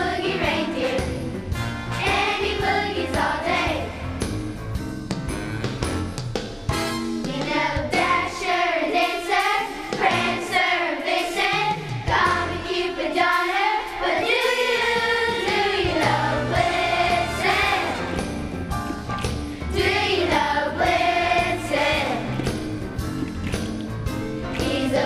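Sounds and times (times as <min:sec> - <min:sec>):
children's choir singing: 0:00.0 - 0:01.2, 0:02.0 - 0:03.9, 0:07.4 - 0:18.4, 0:19.7 - 0:22.5, 0:24.6 - 0:25.0
instrumental accompaniment: 0:00.0 - 0:08.4, 0:14.4 - 0:25.0.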